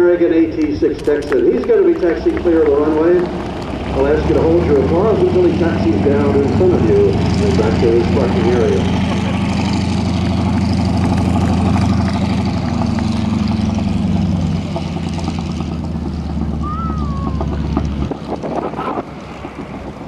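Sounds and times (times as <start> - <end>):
radial aircraft engine droning: 0.0 - 20.0.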